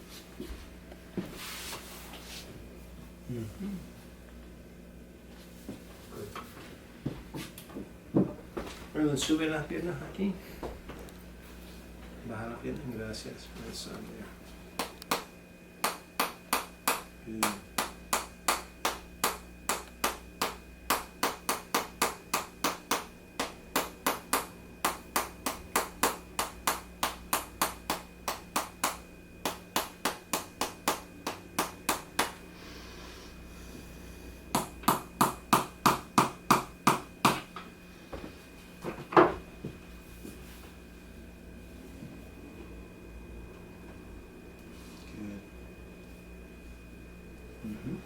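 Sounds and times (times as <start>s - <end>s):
rhythmic tapping on a back: 14.8s - 32.5s.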